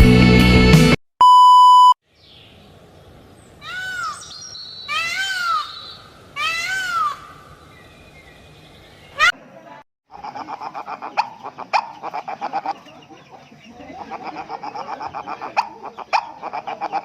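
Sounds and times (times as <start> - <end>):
loud electronic beep: 1.2 - 2.0
peacock calls: 3.5 - 9.4, 10.1 - 17.0.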